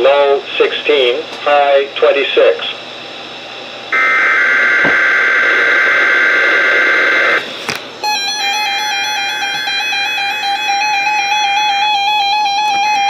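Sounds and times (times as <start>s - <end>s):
buzzing data tones: 3.9s - 7.4s, 8.0s - 13.0s
synthesized keyboard music: 8.0s - 13.0s.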